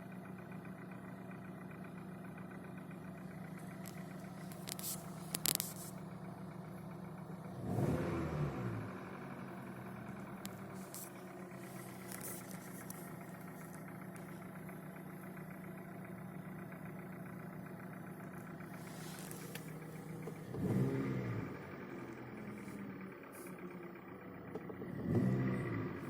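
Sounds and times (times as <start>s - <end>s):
car engine idling with knocking: 0.0s - 26.0s
car engine revving: 7.5s - 13.0s, 18.7s - 23.5s, 24.4s - 26.0s.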